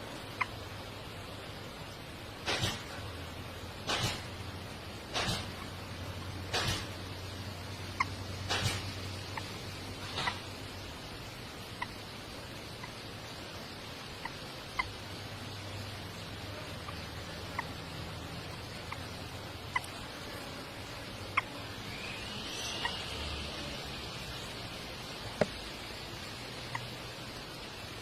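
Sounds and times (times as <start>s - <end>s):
birds peeping: 0.0s - 28.0s
steady hiss: 0.0s - 28.0s
bird's arching call: 21.3s - 23.9s.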